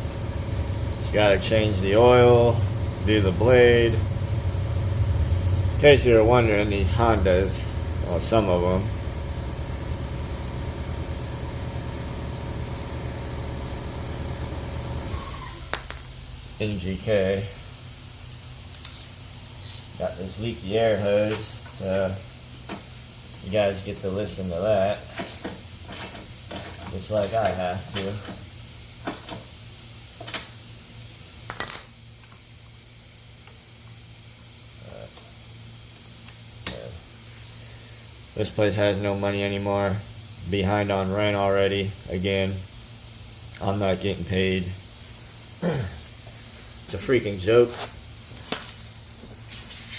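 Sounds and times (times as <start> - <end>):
low hum: 0.0 - 10.9
air hose hissing: 0.0 - 12.0, 15.0 - 31.6, 32.4 - 49.9
metallic clinks of tools: 31.5 - 32.0.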